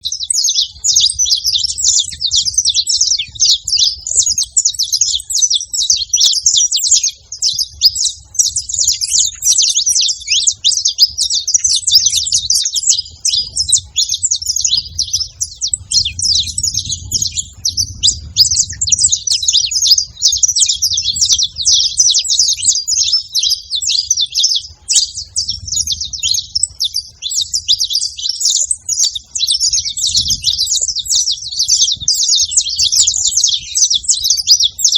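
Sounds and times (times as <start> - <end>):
finches chirping: 0.0 - 34.9.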